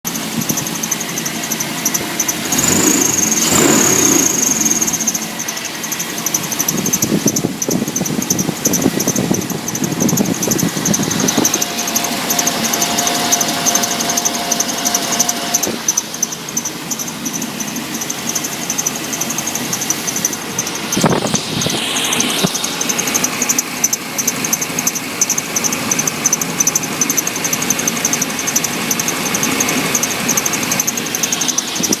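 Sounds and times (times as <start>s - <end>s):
engine running: 0.0s - 32.0s
high pulsing belt squeal: 0.1s - 32.0s
lower whine: 1.2s - 23.7s.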